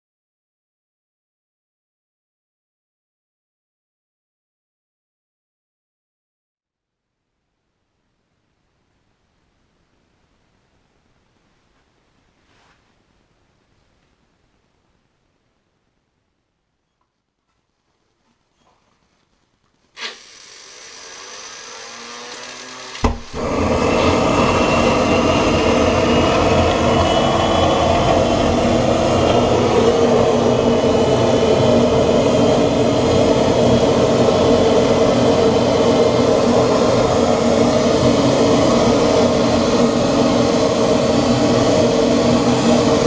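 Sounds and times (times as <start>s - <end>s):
high whine: 20.0s - 43.0s
jet engine spooling up and running: 20.0s - 43.0s
sharp pop: 23.0s - 23.4s.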